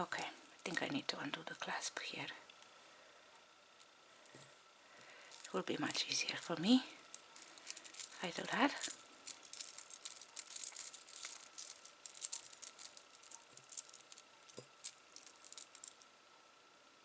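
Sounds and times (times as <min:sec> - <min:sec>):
jewelry chain clicking and jingling: 0:05.0 - 0:16.1.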